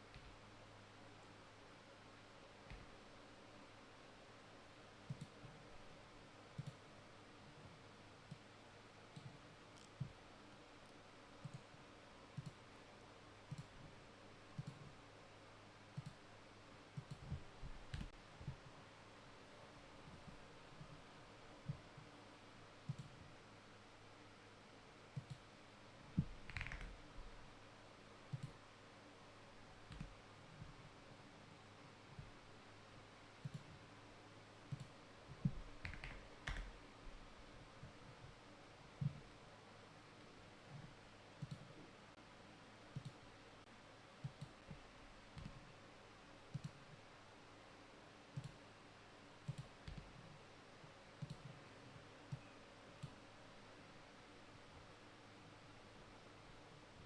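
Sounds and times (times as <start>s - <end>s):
faint clicks and light taps: 0.0s - 0.4s, 2.6s - 3.0s, 5.0s - 5.6s, 6.5s - 6.9s, 7.6s - 8.5s, 9.1s - 10.3s, 11.4s - 12.7s, 13.5s - 14.0s, 14.6s - 15.0s, 15.9s - 16.3s, 16.9s - 18.8s, 22.8s - 23.3s, 25.1s - 25.5s, 28.3s - 28.6s, 29.9s - 31.0s, 33.4s - 33.8s, 34.7s - 37.2s, 40.7s - 41.9s, 42.9s - 43.2s, 44.2s - 45.7s, 46.5s - 47.0s, 48.3s - 48.6s, 49.4s - 50.4s, 51.2s - 53.2s
background hiss: 0.0s - 57.0s.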